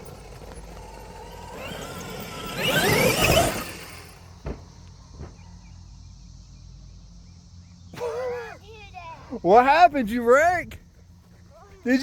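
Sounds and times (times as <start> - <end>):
electric motor whining: 0.0 - 4.4
toy truck landing knocks: 0.0 - 5.3.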